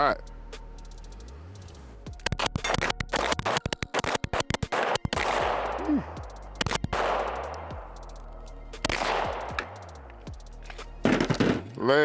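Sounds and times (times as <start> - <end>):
pistol shots with echo: 4.7 - 6.0, 6.6 - 7.6, 8.9 - 9.8.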